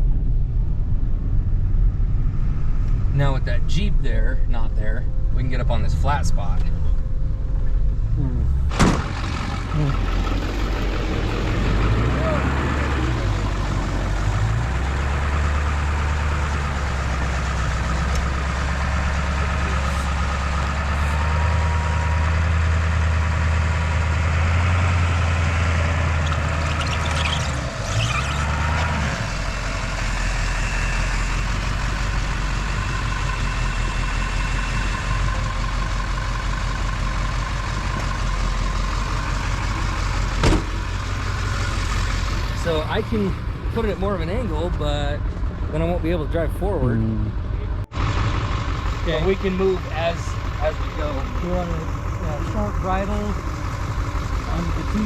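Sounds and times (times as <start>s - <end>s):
truck engine running: 0.0s - 55.0s.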